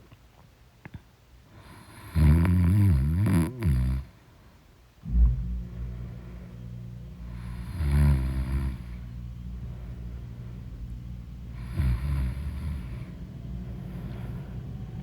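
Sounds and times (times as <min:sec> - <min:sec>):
woman snoring: 0:01.6 - 0:04.1, 0:07.3 - 0:09.0, 0:11.6 - 0:13.1.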